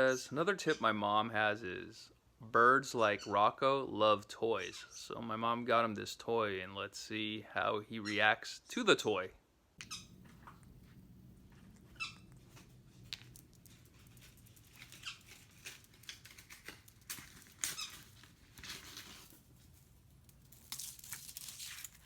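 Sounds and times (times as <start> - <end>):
parrot squeaks and chirps: 9.8 - 10.6, 11.8 - 12.6, 14.7 - 16.7, 17.6 - 18.2.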